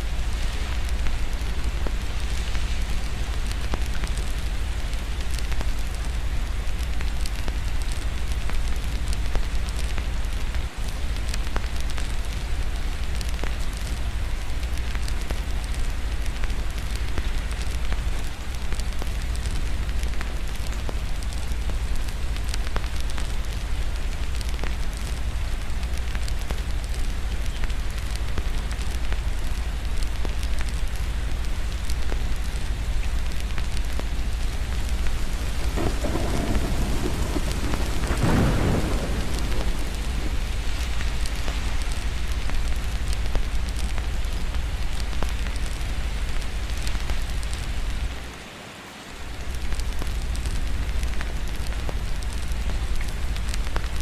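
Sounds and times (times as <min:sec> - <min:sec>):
rain hissing: 0:00.0 - 0:54.0
fireplace crackling and popping: 0:00.2 - 0:48.4, 0:49.3 - 0:54.0
low rumble: 0:32.8 - 0:43.6.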